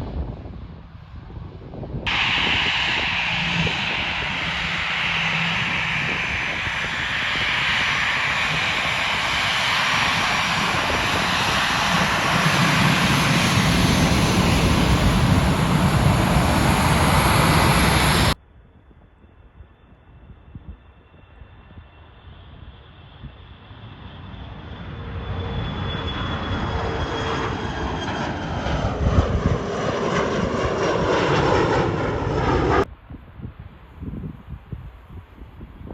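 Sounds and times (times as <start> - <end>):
jet engines roaring: 2.1 - 18.4, 22.9 - 32.9.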